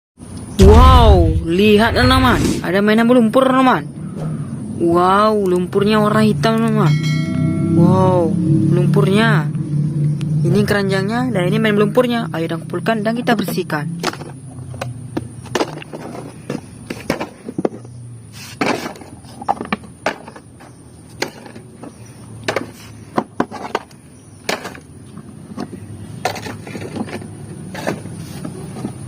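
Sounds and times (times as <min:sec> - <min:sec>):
plastic toy vehicles clattering: 0:13.4 - 0:29.0.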